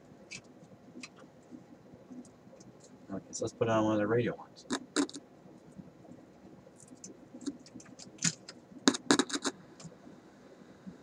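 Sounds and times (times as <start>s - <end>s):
radio clicks and crackles: 0.3s - 3.0s, 4.6s - 10.1s.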